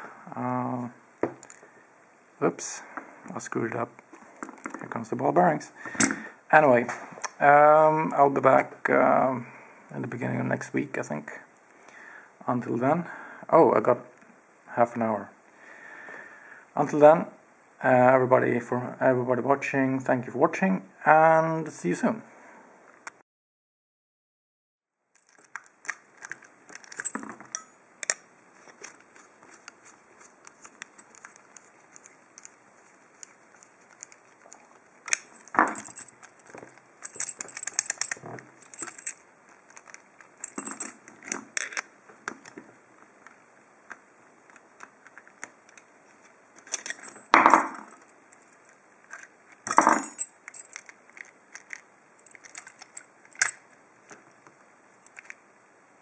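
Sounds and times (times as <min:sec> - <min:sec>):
metal parts clattering: 0:25.2 - 0:29.7, 0:30.6 - 0:41.8, 0:46.6 - 0:53.6
metal lock parts clicking: 0:25.2 - 0:42.6, 0:46.6 - 0:53.7.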